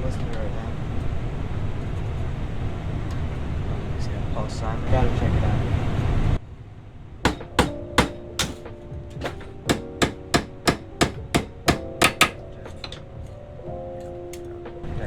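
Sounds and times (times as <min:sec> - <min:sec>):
hammer striking sheet metal: 0:07.3 - 0:13.4.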